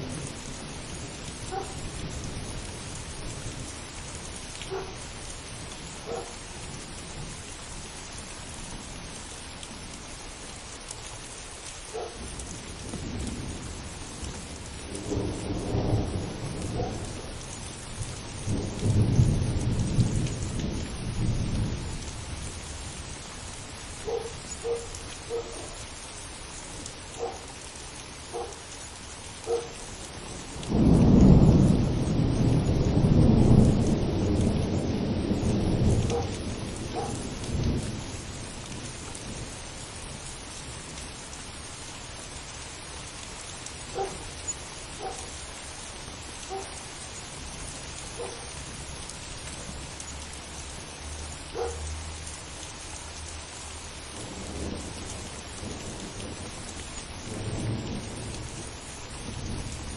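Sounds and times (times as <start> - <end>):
steady rain: 0.0 - 59.9
rolling thunder: 12.2 - 22.7, 30.1 - 39.6, 54.1 - 59.9.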